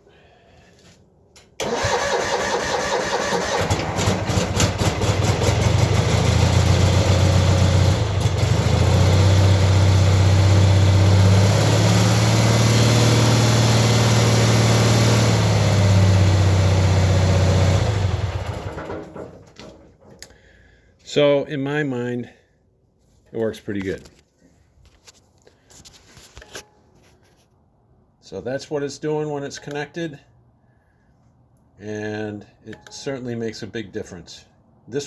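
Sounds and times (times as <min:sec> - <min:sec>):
starter motor cranking: 0:01.6 - 0:09.2
tractor engine running: 0:01.6 - 0:20.1.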